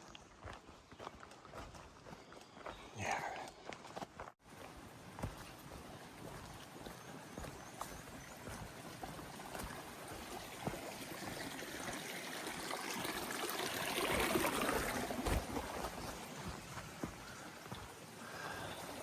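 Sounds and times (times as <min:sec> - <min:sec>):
stream running: 0:04.4 - 0:19.0.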